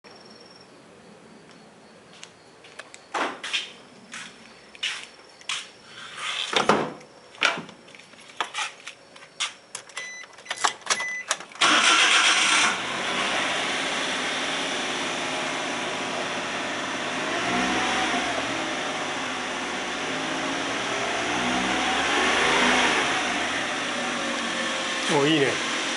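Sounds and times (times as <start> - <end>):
van engine starting and idling: 10.0 - 25.9.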